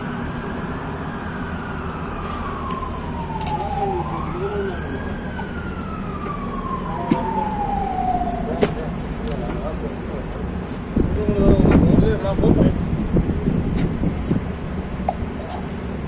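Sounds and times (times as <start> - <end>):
low workshop hum: 0.0 - 8.2
siren wailing: 0.0 - 9.0.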